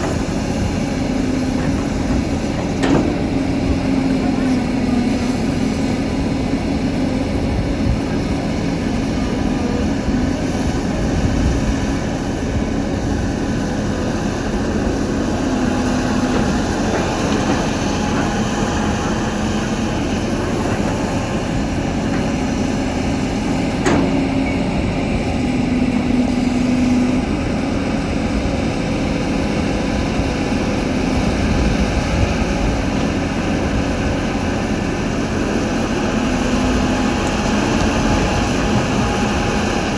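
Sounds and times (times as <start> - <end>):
excavator diesel engine droning: 0.0 - 39.9.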